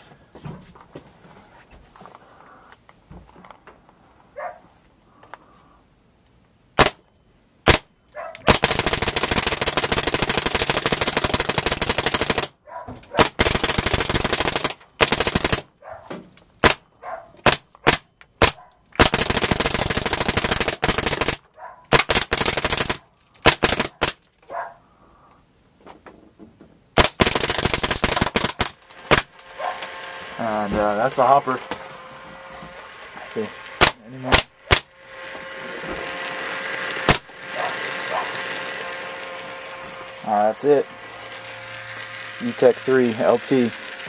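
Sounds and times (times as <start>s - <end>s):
paintball marker firing: 6.8s - 7.0s, 7.7s - 12.6s, 13.2s - 15.7s, 16.6s - 24.2s, 27.0s - 29.9s, 33.8s - 34.9s, 37.0s - 37.3s.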